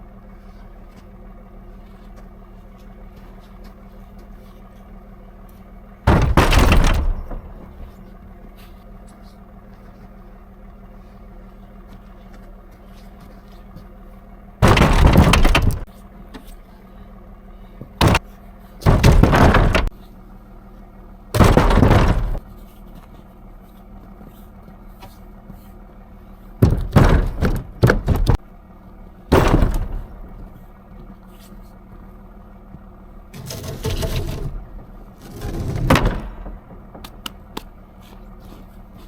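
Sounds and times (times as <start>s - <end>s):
steady engine hum: 0.0s - 39.0s
heavy logs crashing onto load: 5.8s - 8.4s, 14.6s - 16.4s, 17.8s - 20.0s, 21.3s - 22.5s, 26.6s - 28.5s, 29.1s - 31.1s, 32.7s - 37.8s.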